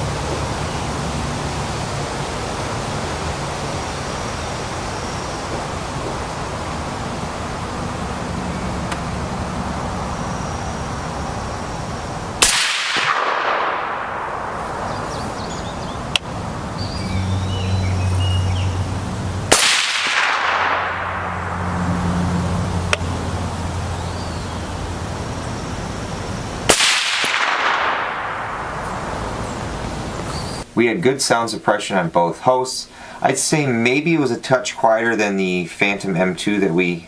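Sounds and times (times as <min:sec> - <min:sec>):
gunshot echo: 0:12.4 - 0:15.4, 0:19.5 - 0:21.9, 0:26.7 - 0:29.5
suppressed rifle shots: 0:12.4 - 0:15.4, 0:19.5 - 0:21.6, 0:26.7 - 0:29.5.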